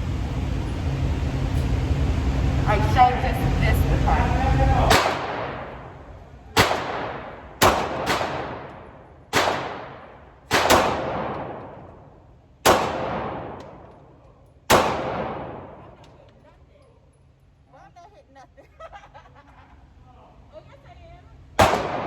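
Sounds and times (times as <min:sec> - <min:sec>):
pistol shots echoing: 0:04.9 - 0:06.0, 0:06.6 - 0:14.0, 0:14.7 - 0:16.0, 0:21.6 - 0:22.0.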